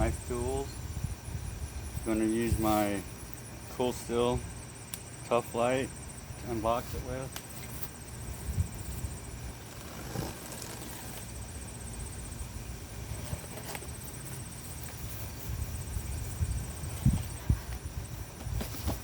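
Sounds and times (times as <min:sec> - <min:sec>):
cardboard box knocks and scrapes: 0:18.4 - 0:19.0.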